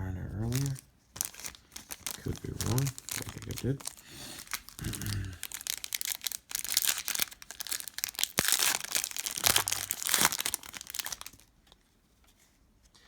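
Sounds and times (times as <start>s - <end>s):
plastic wrapper crinkling and tearing: 0.3s - 11.8s.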